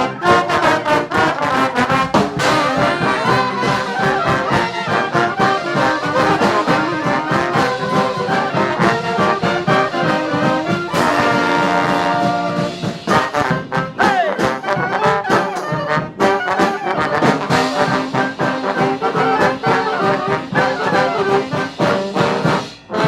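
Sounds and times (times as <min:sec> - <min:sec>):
brass band playing: 0:00.0 - 0:23.0.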